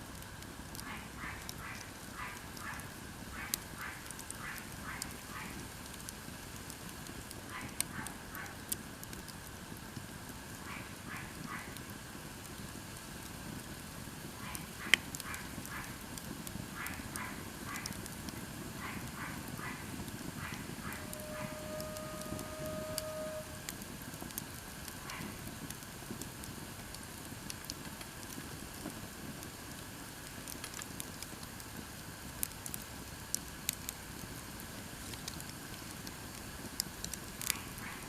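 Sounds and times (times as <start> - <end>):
campfire crackling: 0.0 - 38.0
firewood popping: 0.0 - 38.0
rapid animal calls: 18.8 - 23.2
steady held tone: 20.5 - 23.8.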